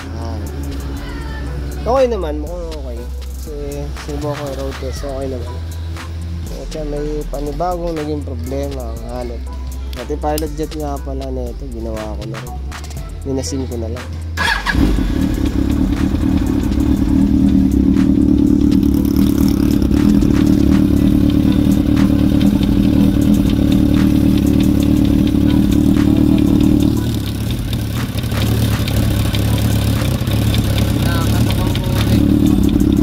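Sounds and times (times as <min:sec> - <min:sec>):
motorcycle engine idling: 0:00.0 - 0:13.3, 0:14.1 - 0:33.0
rapid engine knocking: 0:14.4 - 0:33.0.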